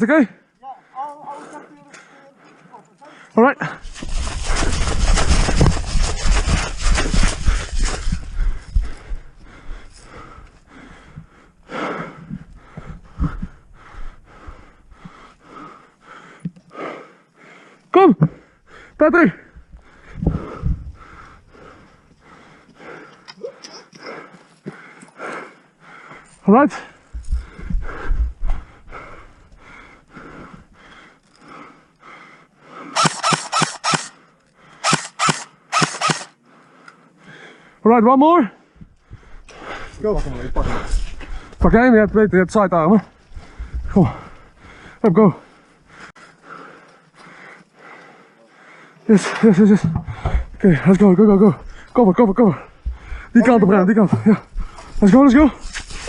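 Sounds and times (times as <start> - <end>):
person breathing hard: 0.6 - 37.8, 38.6 - 41.6, 43.0 - 56.0
airsoft gun shots: 33.0 - 34.1, 34.8 - 36.3.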